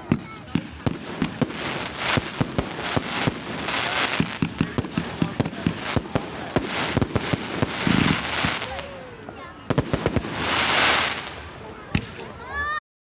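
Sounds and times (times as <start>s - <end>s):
fireworks banging: 0.0s - 12.3s
fireworks crackling hiss: 0.1s - 12.4s.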